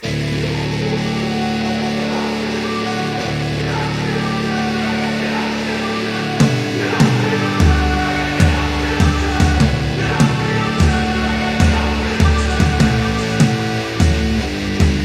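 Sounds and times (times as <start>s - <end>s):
guitar-led rock music: 0.0s - 15.0s
heavy bass: 0.0s - 15.0s
drum hits: 6.4s - 15.0s.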